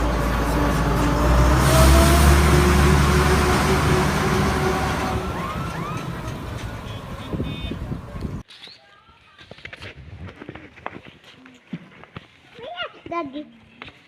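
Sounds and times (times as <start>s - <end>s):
vehicle engine rumble passing: 0.0s - 8.4s.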